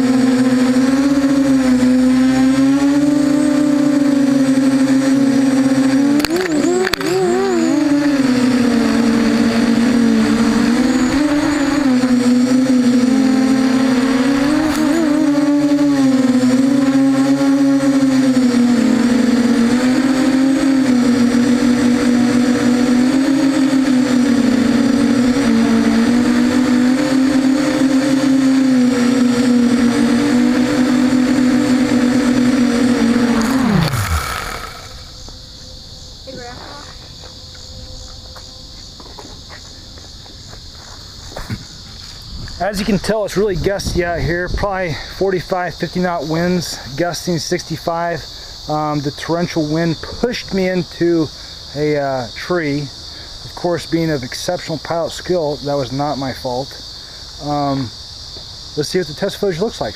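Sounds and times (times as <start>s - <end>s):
quadcopter buzzing: 0.0s - 58.1s
sharp clicks: 6.2s - 7.2s.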